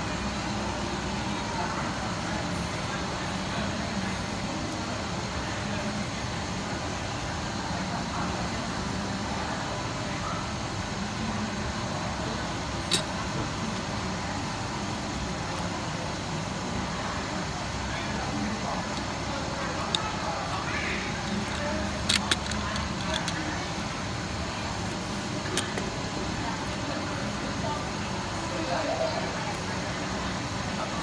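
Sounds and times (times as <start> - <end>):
sharp click: 12.9 - 13.2.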